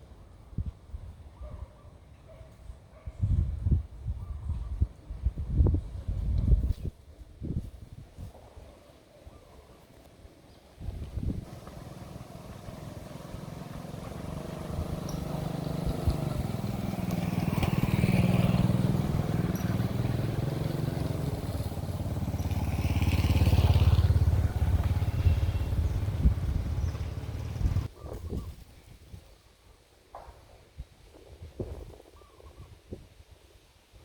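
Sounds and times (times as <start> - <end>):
motor engine running: 11.5 - 27.9.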